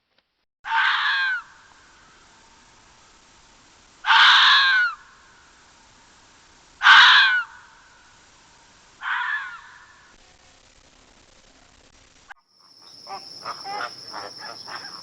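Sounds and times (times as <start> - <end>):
animal calling harshly: 0.7 - 1.5, 4.0 - 5.0, 6.8 - 7.5, 9.0 - 9.9, 13.1 - 15.0.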